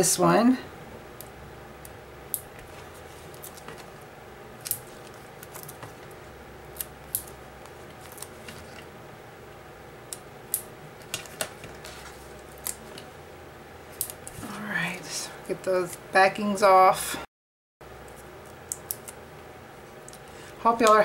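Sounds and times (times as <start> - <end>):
faint steady hum: 0.0 - 21.0
scissors snipping: 18.7 - 19.2.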